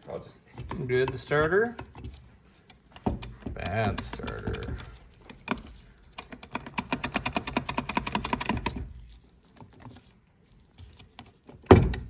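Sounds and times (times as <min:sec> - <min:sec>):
hand ratchet clicking: 0:03.2 - 0:09.0.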